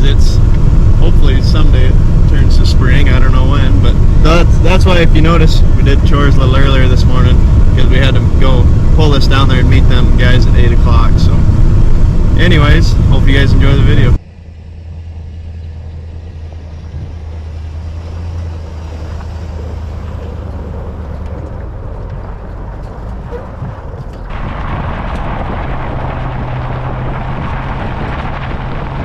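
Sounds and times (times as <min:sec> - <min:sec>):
vehicle engine droning: 0:00.0 - 0:29.0
wind and road noise rushing: 0:00.0 - 0:29.0.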